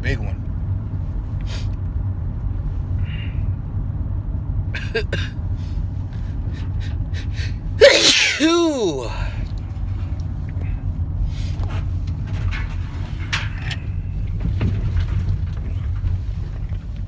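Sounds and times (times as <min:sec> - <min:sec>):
person gasping exclamation: 0:07.8 - 0:09.4.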